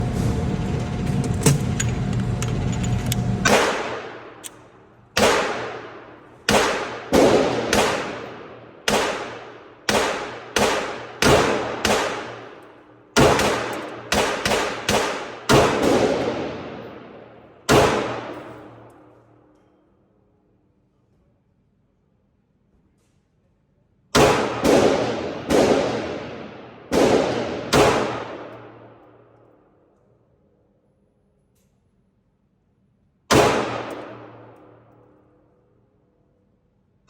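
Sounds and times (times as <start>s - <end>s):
steady hum: 0.0s - 6.4s
pistol shots echoing: 3.5s - 4.4s, 5.2s - 12.6s, 13.2s - 18.9s, 24.2s - 29.0s, 33.3s - 35.0s.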